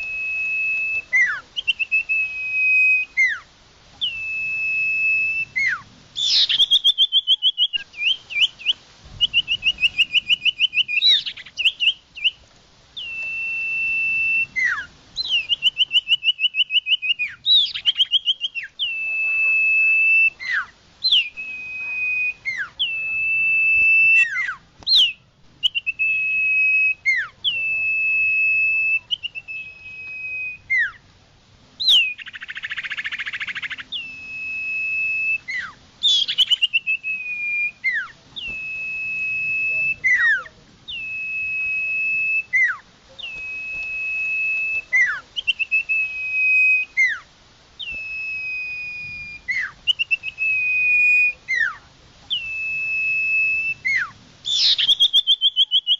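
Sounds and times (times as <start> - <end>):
songbird whistling: 0.0 - 12.4, 13.0 - 31.1, 31.8 - 55.9
songbird rattling trills: 5.2 - 12.4.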